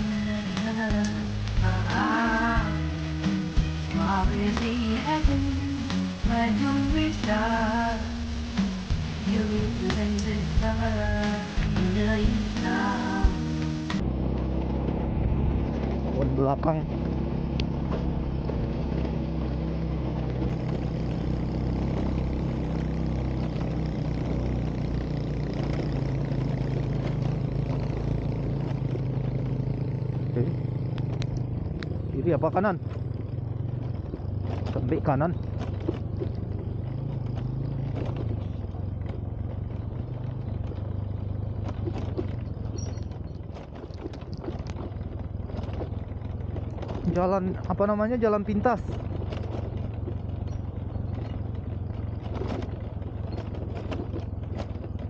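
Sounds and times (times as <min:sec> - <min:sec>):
road and wind noise: 0:00.0 - 0:55.0
vehicle engine running: 0:00.0 - 0:55.0
knocks and rattles: 0:13.9 - 0:55.0.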